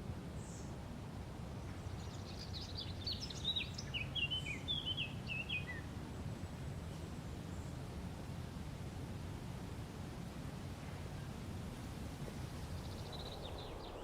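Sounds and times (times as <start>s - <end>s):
songbird singing: 1.7s - 5.9s, 12.4s - 14.0s.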